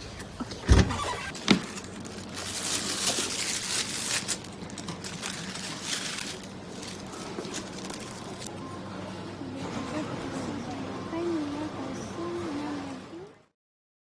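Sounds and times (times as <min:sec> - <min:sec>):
rustling and crinkling handling: 0:00.0 - 0:08.6
low background hum: 0:00.0 - 0:13.5.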